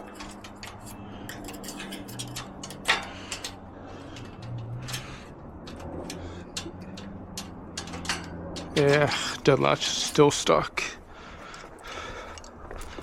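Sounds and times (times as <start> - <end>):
screwdriver clicking and scraping metal: 0.0 - 9.0
metal latch clack: 6.6 - 8.8.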